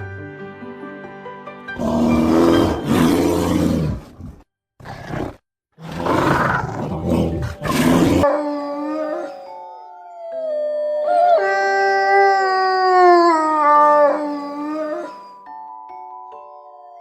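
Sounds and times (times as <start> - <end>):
large animal roaring: 1.8 - 9.4, 11.2 - 15.2.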